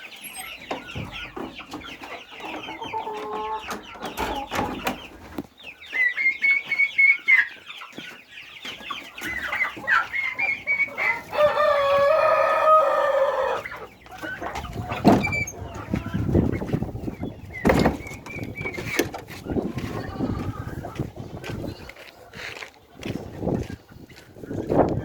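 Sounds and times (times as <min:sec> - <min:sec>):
chickens clucking: 0:00.0 - 0:25.0
rooster crowing: 0:11.0 - 0:13.6.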